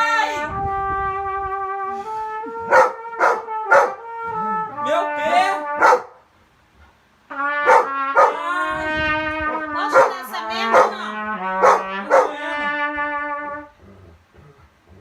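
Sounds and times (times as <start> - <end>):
horn playing long notes: 0.0 - 6.0, 7.3 - 13.8
dog yowling: 2.6 - 4.7, 5.7 - 6.2, 7.7 - 8.4, 9.9 - 12.6
dog barking: 2.7 - 4.0, 5.8 - 6.2, 7.6 - 8.4, 9.9 - 12.5.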